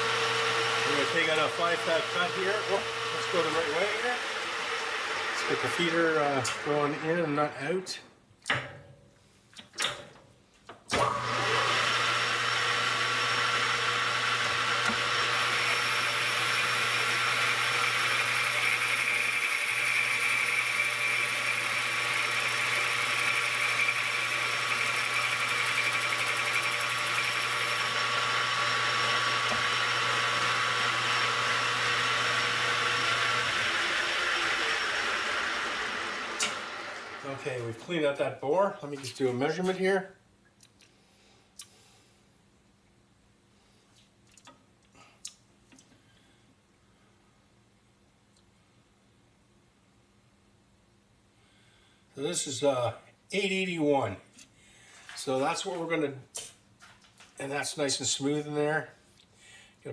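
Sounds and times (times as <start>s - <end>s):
metal lathe humming: 0.0s - 7.4s, 11.0s - 37.6s.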